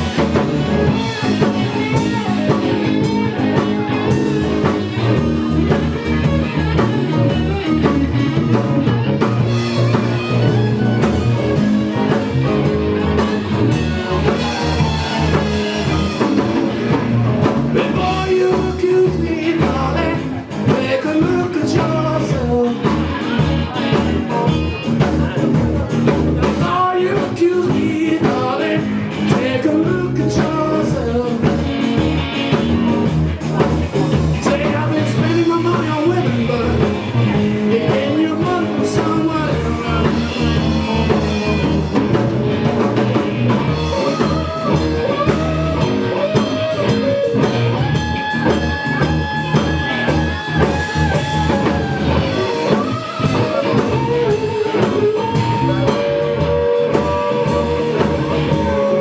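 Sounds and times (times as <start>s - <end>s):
rock band playing blues song: 0.0s - 59.0s
person singing: 17.4s - 42.0s, 43.7s - 47.4s, 48.5s - 59.0s.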